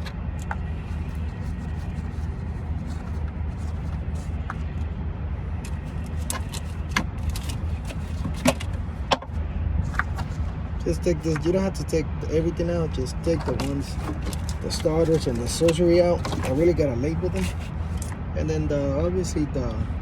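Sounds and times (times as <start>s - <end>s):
engine rumbling: 0.0s - 20.0s
hand tools clicking and knocking: 13.4s - 16.6s.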